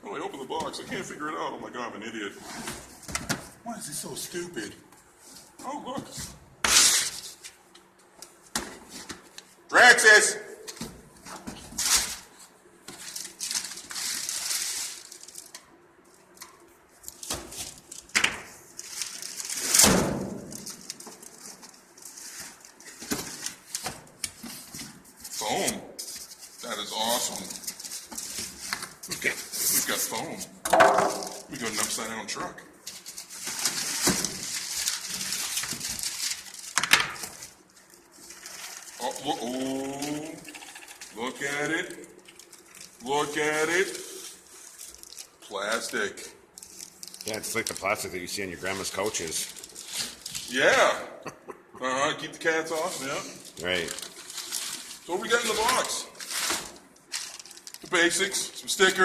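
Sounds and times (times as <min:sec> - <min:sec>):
packaging rustling and crinkling: 0:11.3 - 0:16.4, 0:17.0 - 0:19.8, 0:20.4 - 0:25.3, 0:26.0 - 0:30.1, 0:32.8 - 0:40.4, 0:41.8 - 0:50.6, 0:52.8 - 0:58.1
cardboard rustling and scraping: 0:49.2 - 0:50.5.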